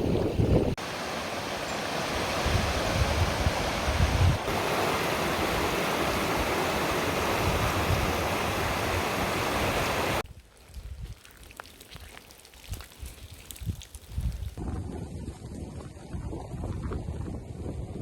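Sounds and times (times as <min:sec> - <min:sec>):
water rushing: 0:00.7 - 0:10.2.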